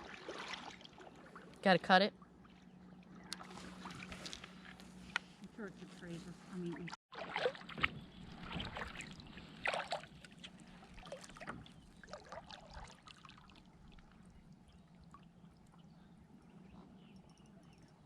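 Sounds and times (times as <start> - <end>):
water splashing around kayak: 0.0 - 1.6, 2.2 - 5.1, 6.5 - 15.8.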